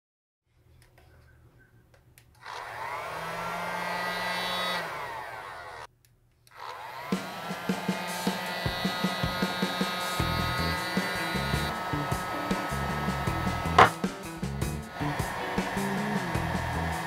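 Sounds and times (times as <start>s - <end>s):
heat gun fan whine: 2.4s - 5.9s, 6.5s - 17.0s
sharp taps: 13.8s - 14.2s.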